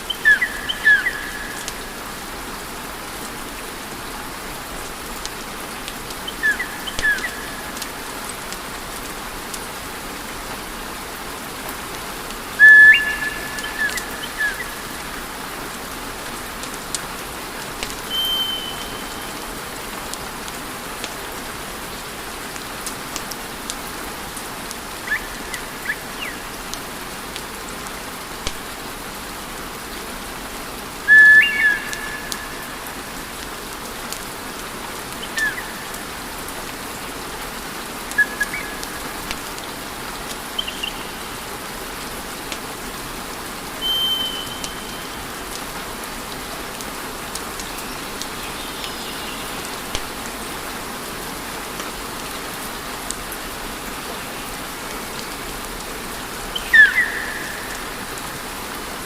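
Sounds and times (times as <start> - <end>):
burning wood whistling: 43.8 - 44.8.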